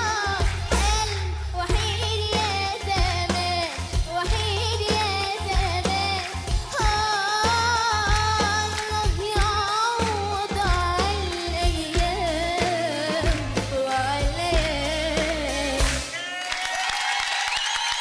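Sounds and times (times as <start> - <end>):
woman singing pop song: 0.0 - 16.1
band accompaniment with bass beat: 0.0 - 16.3.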